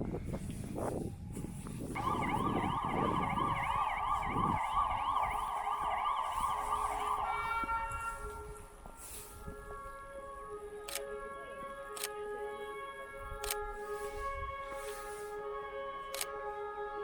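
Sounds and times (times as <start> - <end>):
low rumbling traffic: 2.0 - 8.9
emergency siren warbling: 2.0 - 17.0.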